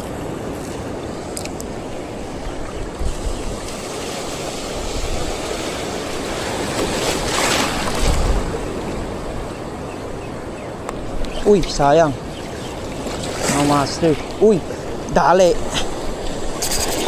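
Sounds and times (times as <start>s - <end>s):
wind noise: 0.0s - 9.8s
sea waves washing: 0.0s - 17.0s.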